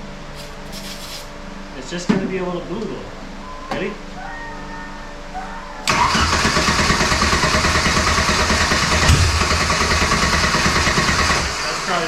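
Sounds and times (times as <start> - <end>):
engine sputtering: 5.9 - 12.0
starter cranking engine: 5.9 - 12.0.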